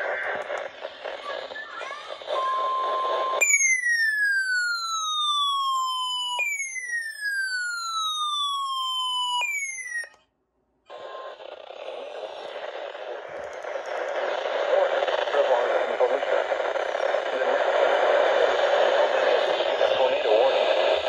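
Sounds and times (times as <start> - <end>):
radio hiss: 0.0 - 3.4, 10.9 - 21.0
falling emergency alert sweep: 0.8 - 10.2.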